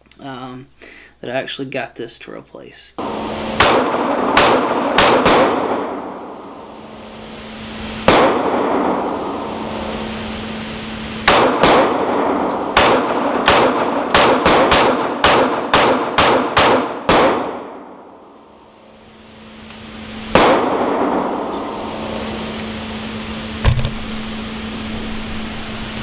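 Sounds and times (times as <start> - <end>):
gunshots with long echo: 3.0 - 7.0, 7.9 - 9.7, 11.2 - 18.1, 20.3 - 21.5.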